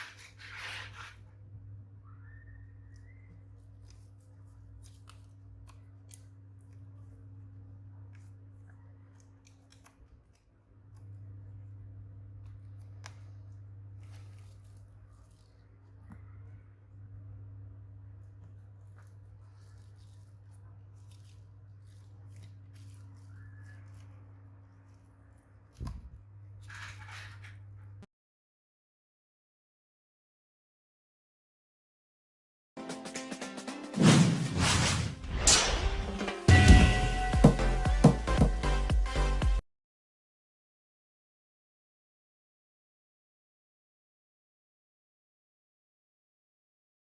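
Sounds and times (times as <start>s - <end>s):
scraping rustle: 0.0s - 1.3s, 18.4s - 28.0s
low electrical hum: 0.3s - 28.0s.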